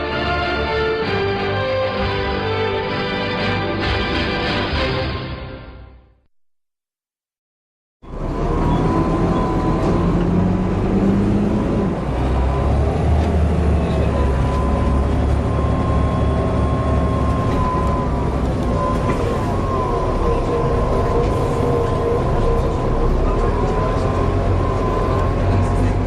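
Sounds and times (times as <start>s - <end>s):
bus diesel engine rumble: 8.0s - 26.0s.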